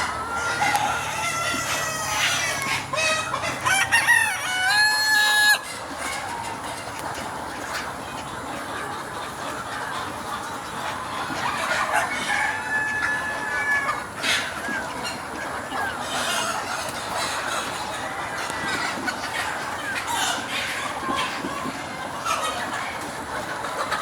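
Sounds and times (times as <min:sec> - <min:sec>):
rooster crowing: 0:00.0 - 0:05.6, 0:12.0 - 0:14.1
chickens clucking: 0:00.0 - 0:24.0.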